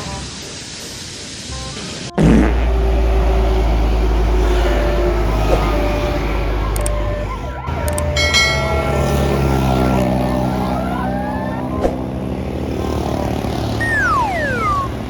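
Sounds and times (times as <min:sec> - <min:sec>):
loud vehicle horn blaring: 0:02.2 - 0:10.9
heavy vehicle engine rumbling: 0:02.4 - 0:15.0
siren-like falling tone: 0:02.6 - 0:15.0.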